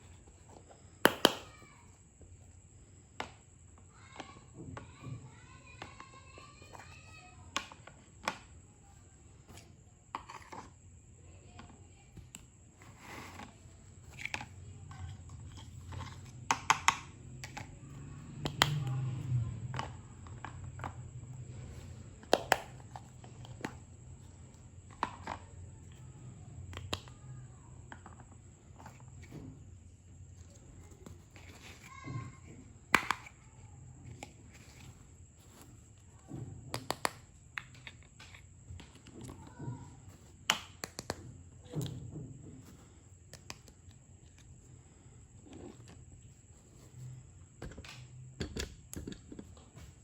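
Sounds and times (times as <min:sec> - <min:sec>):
toy pieces clicking and tapping: 0:14.1 - 0:17.8, 0:18.4 - 0:23.8, 0:36.7 - 0:39.5, 0:40.4 - 0:41.2.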